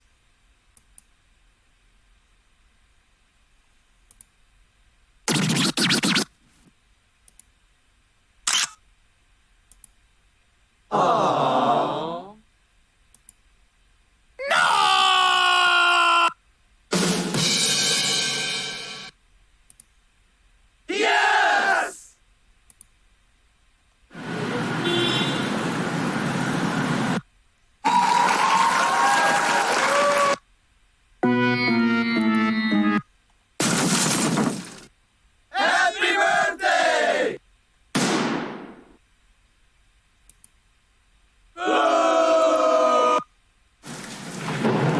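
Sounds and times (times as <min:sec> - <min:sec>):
computer mouse clicks: 0:00.8 - 0:01.1, 0:04.1 - 0:04.3, 0:07.3 - 0:07.5, 0:09.7 - 0:10.0, 0:13.1 - 0:13.4, 0:19.7 - 0:20.0, 0:22.7 - 0:23.0, 0:40.3 - 0:40.6
mouse clicks: 0:09.7 - 0:10.0, 0:13.1 - 0:13.4, 0:19.7 - 0:19.9, 0:40.3 - 0:40.6
loud bursts of noise: 0:24.2 - 0:27.2
road traffic noise: 0:24.2 - 0:27.2.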